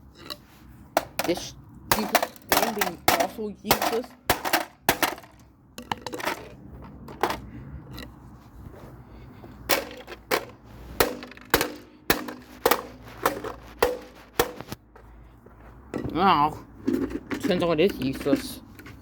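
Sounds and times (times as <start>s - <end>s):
plastic toy being struck and cracking: 1.0s - 7.4s, 9.7s - 14.8s.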